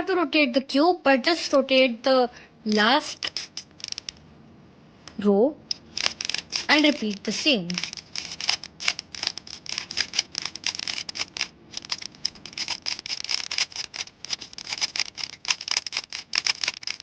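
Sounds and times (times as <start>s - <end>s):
puzzle cube clicks and scrapes: 1.2s - 2.0s, 2.7s - 4.2s, 5.7s - 17.0s.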